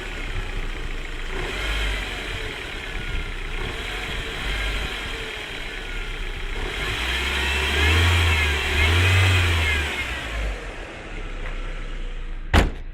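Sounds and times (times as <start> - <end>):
car engine revving from idle: 0.0 - 12.5
engine whine: 0.0 - 12.8.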